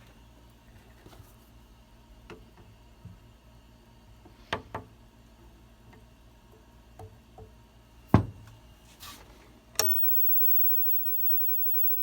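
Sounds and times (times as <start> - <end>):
faint ticks: 9.8 - 12.0.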